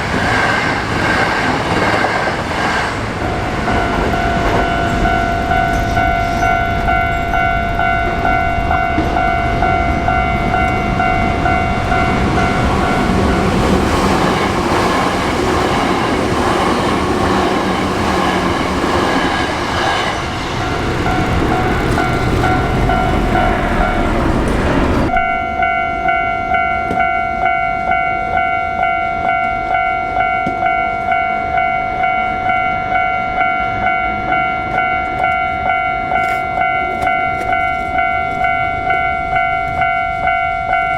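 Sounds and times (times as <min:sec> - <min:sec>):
electric train running: 0:00.0 - 0:25.8
level crossing warning bell ringing: 0:03.2 - 0:40.9.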